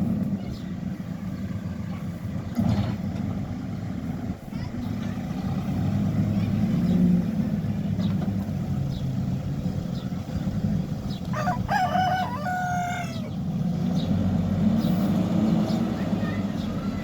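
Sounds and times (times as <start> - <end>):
diesel engine running: 0.0 - 17.0
rooster crowing: 11.3 - 13.4.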